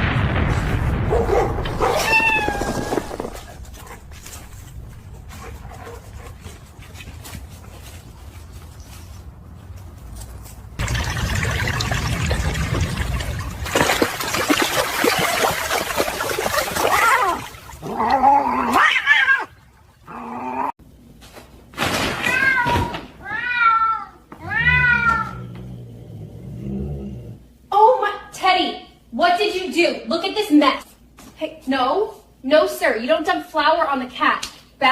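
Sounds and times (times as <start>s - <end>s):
cat meowing: 1.9s - 3.0s, 22.3s - 25.5s.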